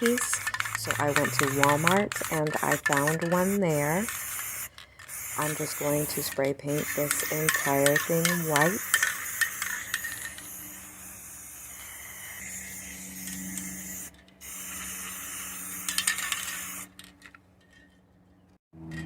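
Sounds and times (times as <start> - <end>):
spray paint can hissing: 0.0 - 17.0.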